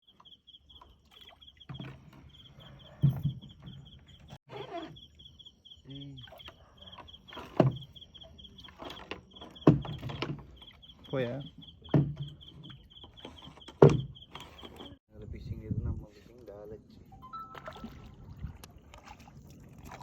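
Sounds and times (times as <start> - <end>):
night insects chirping: 0.0 - 15.0.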